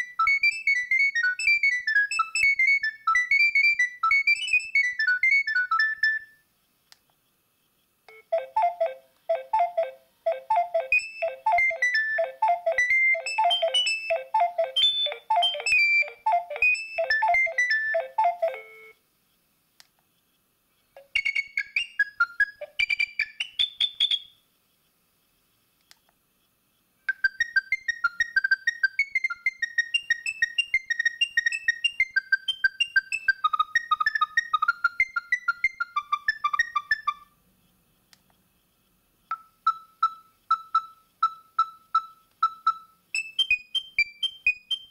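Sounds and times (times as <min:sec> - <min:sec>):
electronic ringtone melodies: 0:08.1 - 0:19.0, 0:27.1 - 0:37.3.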